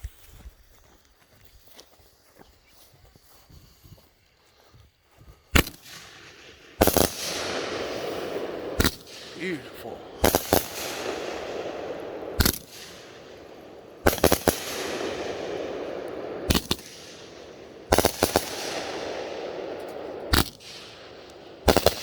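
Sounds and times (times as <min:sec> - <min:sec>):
crackling fireworks stars: 0:05.5 - 0:22.0
fireworks bangs: 0:05.9 - 0:22.0.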